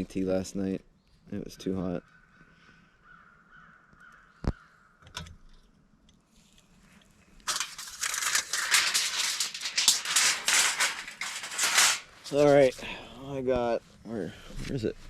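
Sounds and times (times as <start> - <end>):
bag crinkling and rustling: 7.4 - 12.7.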